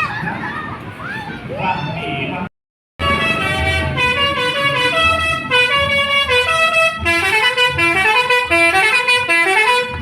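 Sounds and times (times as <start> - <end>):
bus horn playing a tune: 3.0 - 10.0.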